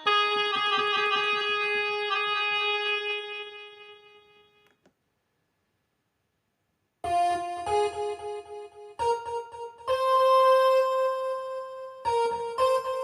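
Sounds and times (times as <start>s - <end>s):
electronic keyboard melody: 0.0s - 4.8s, 7.0s - 13.0s.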